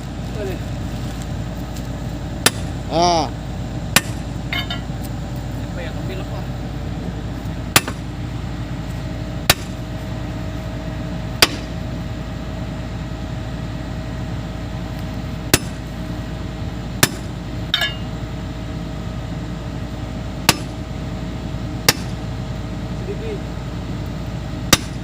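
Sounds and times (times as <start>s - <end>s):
steady low hum: 0.0s - 25.0s
hammer striking steel: 2.4s - 2.7s, 3.9s - 4.9s, 7.7s - 8.0s, 9.4s - 9.8s, 11.4s - 11.8s, 15.5s - 15.8s, 17.0s - 18.1s, 20.4s - 20.8s, 21.8s - 22.2s, 24.7s - 25.0s.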